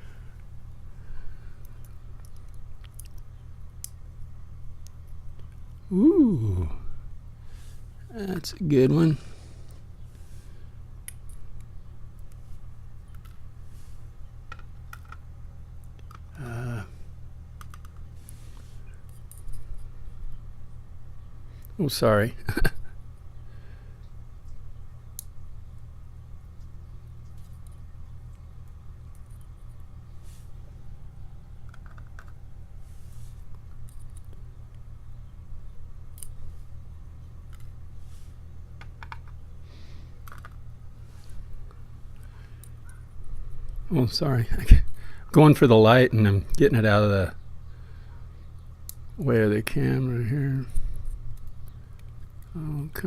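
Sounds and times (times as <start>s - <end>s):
low electrical hum: 0.0s - 53.0s
person humming: 5.8s - 7.0s.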